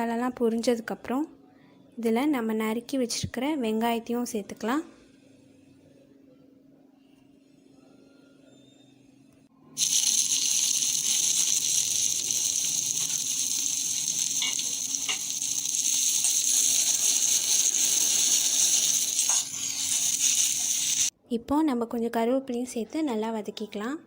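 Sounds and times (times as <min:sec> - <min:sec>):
onions and spices sizzling in oil: 0:09.8 - 0:21.1.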